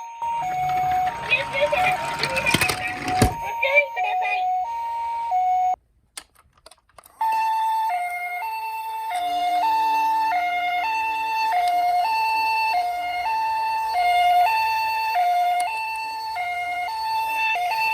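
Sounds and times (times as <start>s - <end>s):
toy two-tone siren: 0.0s - 5.8s, 7.1s - 17.9s
clicks: 0.4s - 3.5s, 6.1s - 7.2s.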